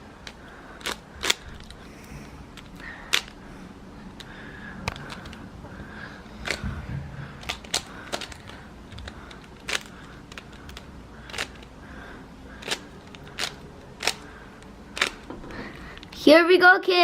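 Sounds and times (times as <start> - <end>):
rubik's cube clicking: 0.2 - 1.8, 2.6 - 3.4, 7.4 - 11.7, 12.6 - 14.3, 14.9 - 15.3.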